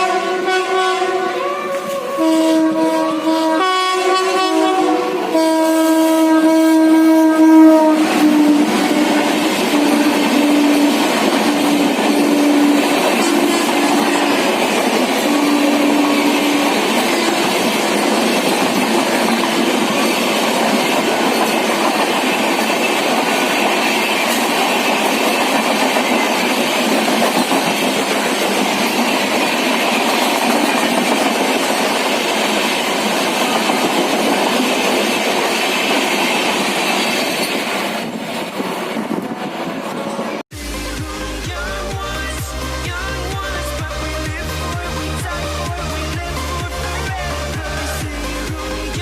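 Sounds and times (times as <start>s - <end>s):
train wheels clattering over rail joints: 9.0s - 39.6s.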